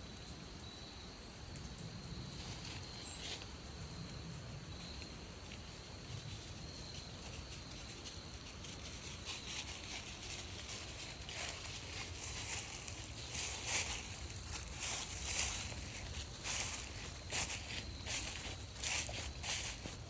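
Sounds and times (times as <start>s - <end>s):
insect trill: 2.1s - 20.0s
footsteps on a trail: 8.2s - 20.0s.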